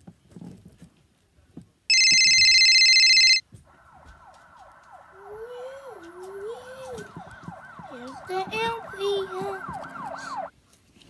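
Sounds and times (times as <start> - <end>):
toy siren wail: 1.9 - 3.4, 4.0 - 10.5
lower rising siren wail: 3.5 - 10.5.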